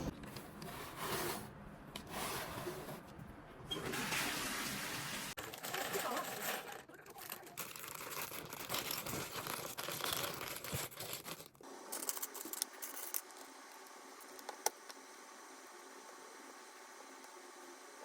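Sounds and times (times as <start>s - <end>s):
packaging tearing and crinkling: 6.9s - 13.4s.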